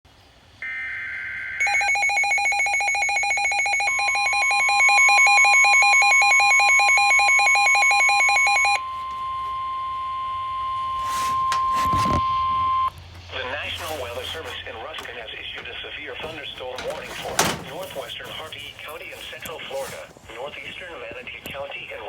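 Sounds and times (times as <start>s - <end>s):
warbling electronic alarm: 0.6s - 12.9s
steady single-pitch warning tone: 0.6s - 15.1s
static crackle: 18.1s - 22.0s.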